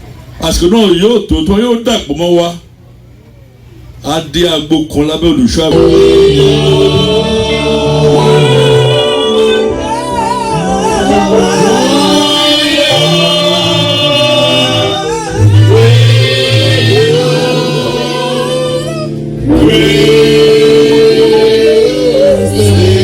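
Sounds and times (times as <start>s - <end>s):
choir singing a hymn: 5.7s - 23.0s.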